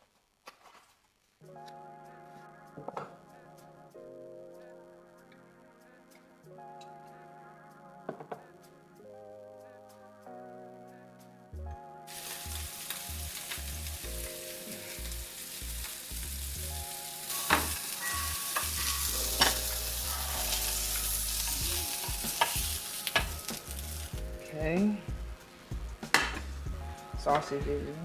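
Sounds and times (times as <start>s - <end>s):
sausages sizzling in a frying pan: 12.1s - 28.0s
utensil clicking against pan: 20.9s - 23.9s, 26.1s - 26.5s.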